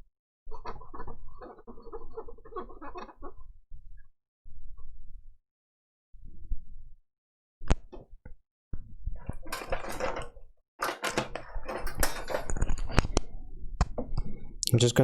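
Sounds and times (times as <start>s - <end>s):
tools clattering and rustling: 9.2s - 13.2s.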